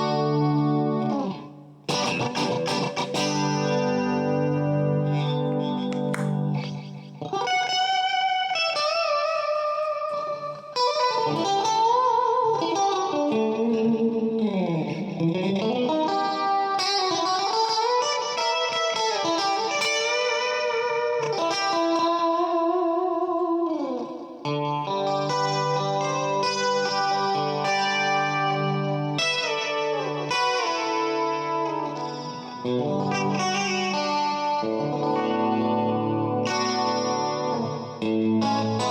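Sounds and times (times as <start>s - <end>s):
electric guitar chords: 0.0s - 38.9s
electric guitar lead with vibrato: 0.0s - 38.9s.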